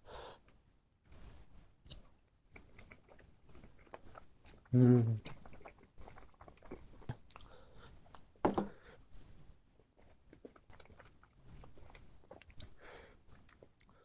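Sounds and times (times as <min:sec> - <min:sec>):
person chewing and biting food: 0:01.9 - 0:07.5, 0:10.0 - 0:14.0.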